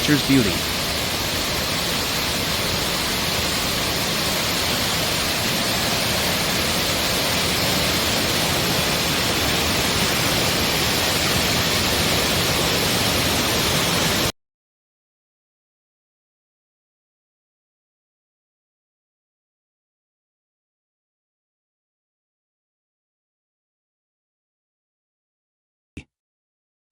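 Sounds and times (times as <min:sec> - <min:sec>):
waterfall rushing: 0:00.0 - 0:14.3.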